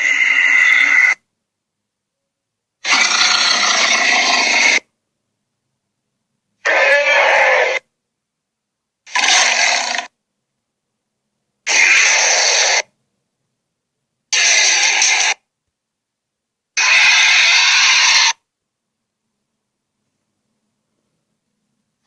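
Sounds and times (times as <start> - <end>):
gorilla roaring: 0.0 - 1.2, 2.8 - 4.9, 6.6 - 7.9, 9.1 - 10.1, 11.7 - 12.9, 14.4 - 15.4, 16.8 - 18.4.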